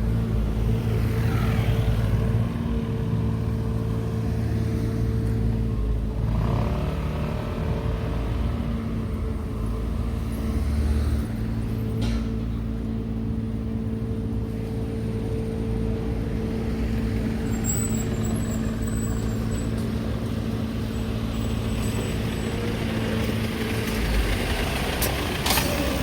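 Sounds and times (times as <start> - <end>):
cars passing by: 0.0 - 26.0
engine idling: 11.6 - 26.0.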